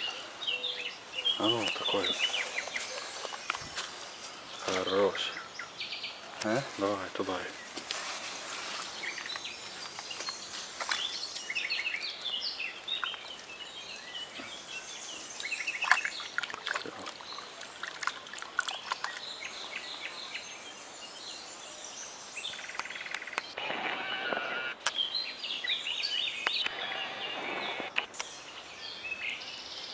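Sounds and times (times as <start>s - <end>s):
birds chirping and singing: 0.0s - 6.3s, 8.5s - 29.9s
rustling noise: 1.7s - 4.9s, 6.6s - 11.3s.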